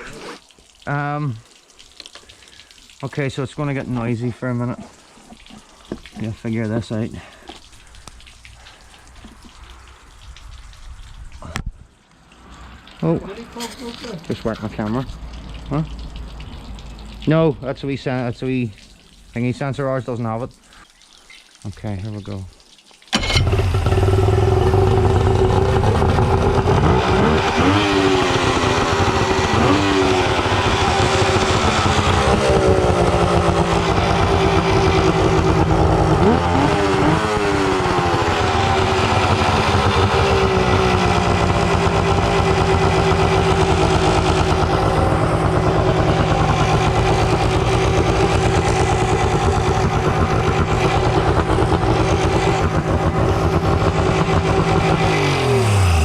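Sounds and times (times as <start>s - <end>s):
outboard motor revving: 23.2s - 56.0s.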